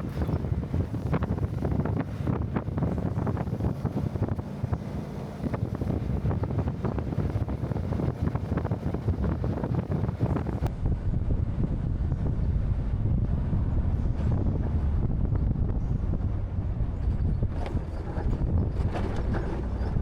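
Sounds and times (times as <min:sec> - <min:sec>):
vehicle engine rumble: 0:00.0 - 0:20.0
wind buffeting microphone: 0:00.0 - 0:20.0
knocks and rattles: 0:17.1 - 0:20.0.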